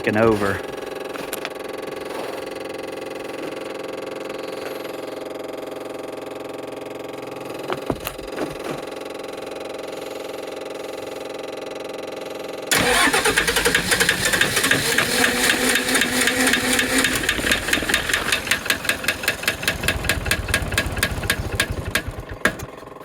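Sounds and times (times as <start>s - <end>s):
diesel engine cranking on starter: 12.7s - 23.0s
diesel engine knocking: 12.7s - 23.0s.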